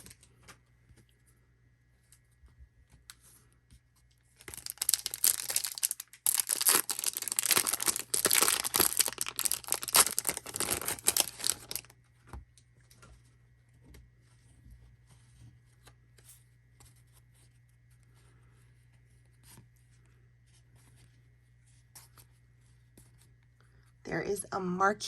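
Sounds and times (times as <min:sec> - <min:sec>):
card pack wrappers tearing and crinkling: 0:04.4 - 0:12.0.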